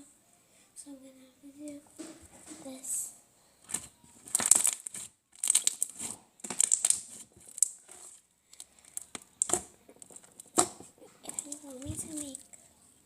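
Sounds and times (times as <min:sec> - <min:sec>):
slime crackling and popping: 0:03.7 - 0:12.5.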